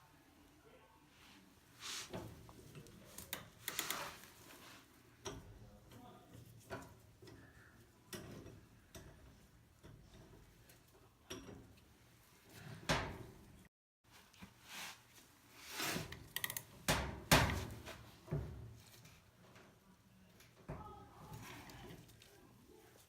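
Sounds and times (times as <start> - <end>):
knocks and scrapes of tools: 1.9 - 11.9, 15.6 - 19.7.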